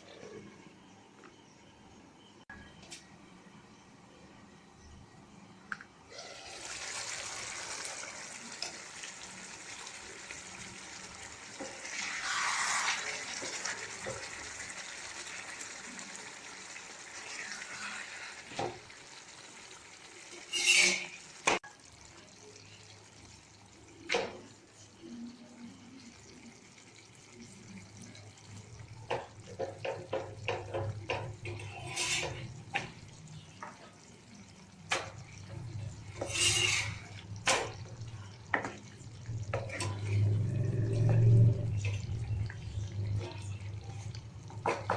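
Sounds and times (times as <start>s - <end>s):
curry sizzling in a hot pan: 6.2s - 24.1s, 26.0s - 44.9s
metal spoon scraping a pot: 20.3s - 21.2s, 30.4s - 32.6s, 34.9s - 37.2s.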